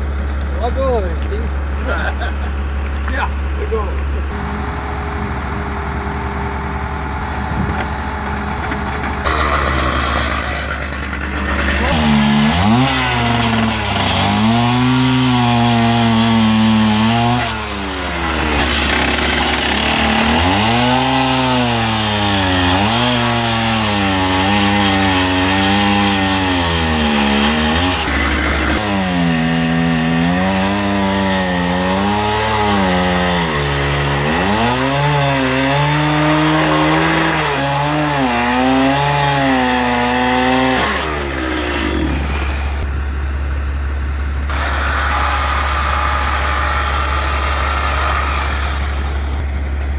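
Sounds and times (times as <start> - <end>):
small petrol engine revving: 9.1 - 43.2.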